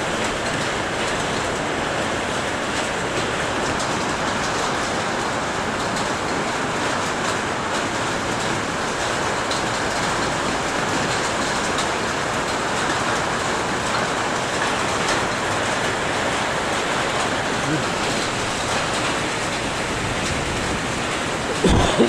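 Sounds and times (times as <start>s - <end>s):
heavy rain hissing: 14.3s - 22.0s.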